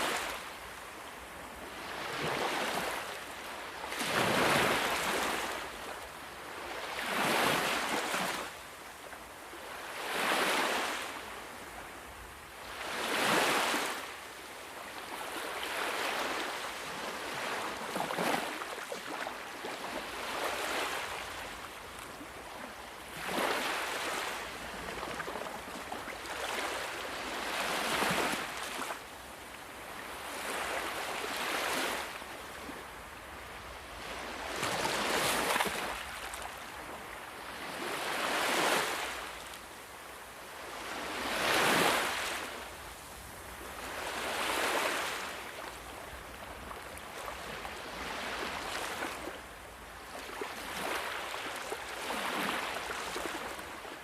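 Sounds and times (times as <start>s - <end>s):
constant wash of water: 0.0s - 54.0s
ocean waves breaking on shore: 0.0s - 54.0s.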